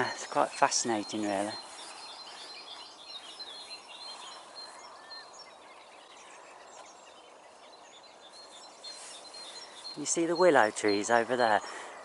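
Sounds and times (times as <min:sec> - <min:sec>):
background hiss: 0:00.0 - 0:12.0
songbirds chirping: 0:00.0 - 0:12.0.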